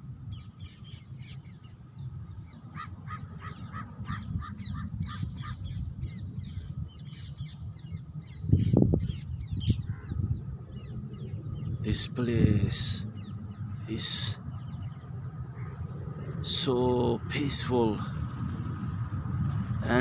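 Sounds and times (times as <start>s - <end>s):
steady low rumble: 0.0s - 20.0s.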